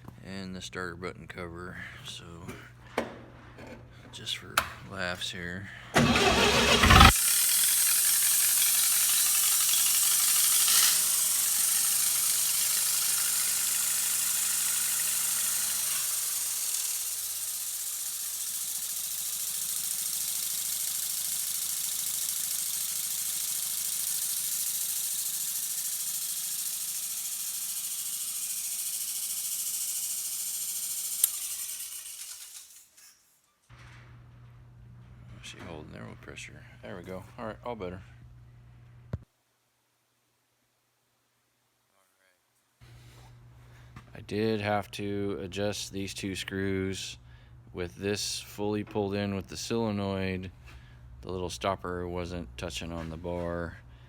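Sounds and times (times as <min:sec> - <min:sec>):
welder gas engine running: 0:06.0 - 0:32.8.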